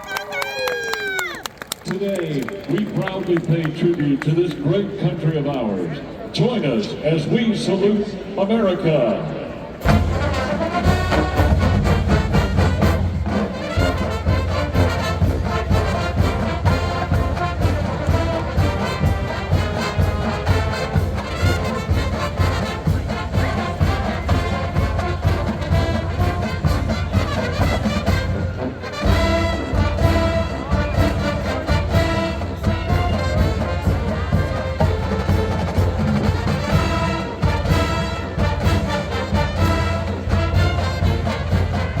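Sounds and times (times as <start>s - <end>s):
marching band brass music: 2.0s - 42.0s
steady drum beat: 9.8s - 42.0s.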